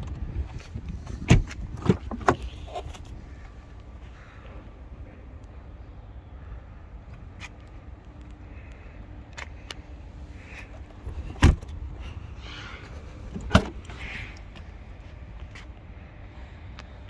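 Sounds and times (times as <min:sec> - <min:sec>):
low steady rumble: 0:00.0 - 0:17.0
car doors shutting: 0:00.5 - 0:03.6, 0:10.3 - 0:15.7.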